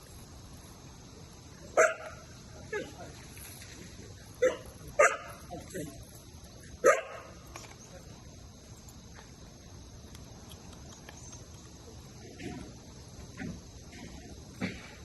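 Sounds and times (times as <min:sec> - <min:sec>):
insects chirping: 0:00.0 - 0:15.0
dog barking: 0:01.8 - 0:02.2, 0:04.4 - 0:05.4, 0:06.8 - 0:07.4.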